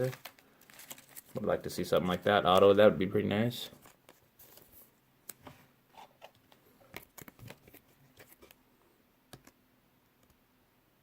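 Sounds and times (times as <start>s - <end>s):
cards ticking and rustling: 0.0s - 2.8s, 6.5s - 8.6s.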